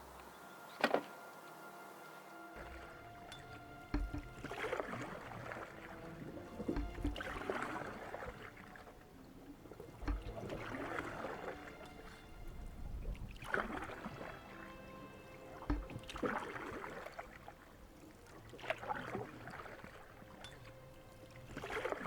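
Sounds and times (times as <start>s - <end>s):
paddle splashing in water: 0.0s - 22.0s
low knock of paddle: 2.6s - 8.3s, 10.0s - 11.2s, 15.6s - 16.8s.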